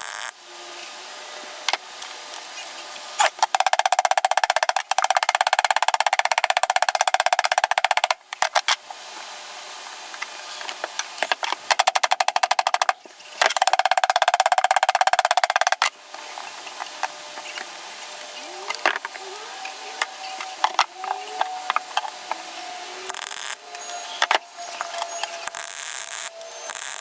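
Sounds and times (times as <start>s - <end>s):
welder arc crackling: 0.0s - 0.3s, 19.9s - 27.0s.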